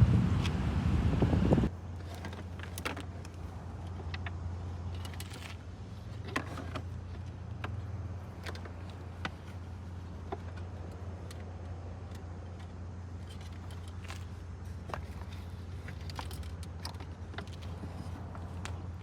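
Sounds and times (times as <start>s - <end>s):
small parts clicking and clinking: 10.2s - 18.8s.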